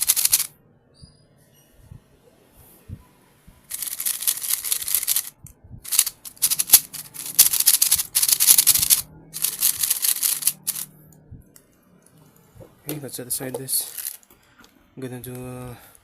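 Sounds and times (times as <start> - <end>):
speed cube clattering: 0.0 - 0.5, 3.7 - 10.9, 13.8 - 14.2.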